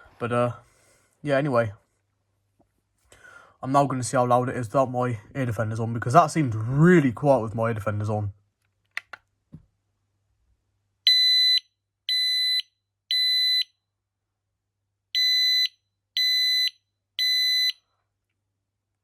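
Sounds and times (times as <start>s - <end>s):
smoke alarm beeping: 11.1s - 13.8s, 15.2s - 17.9s.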